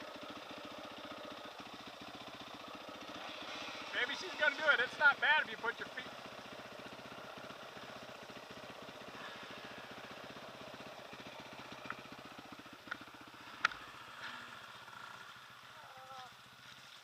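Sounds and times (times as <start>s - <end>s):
motorcycle engine idling: 0.0s - 17.0s.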